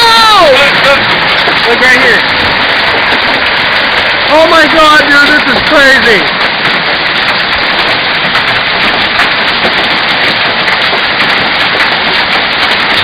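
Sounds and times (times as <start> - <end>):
hail and rain pelting: 0.0 - 13.0.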